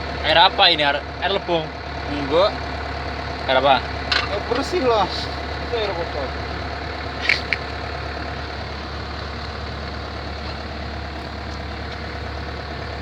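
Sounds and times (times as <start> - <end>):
diesel engine idling: 0.0 - 13.0
short sharp clicks: 7.2 - 7.7.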